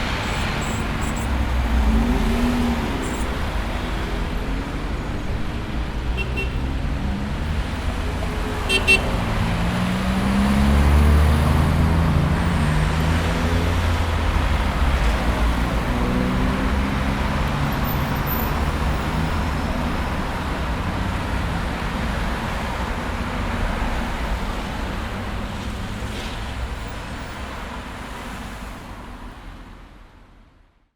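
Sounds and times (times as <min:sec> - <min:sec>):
hiss of passing vehicles: 0:00.0 - 0:05.8, 0:07.2 - 0:30.0
vehicle engine passing by: 0:00.0 - 0:22.6.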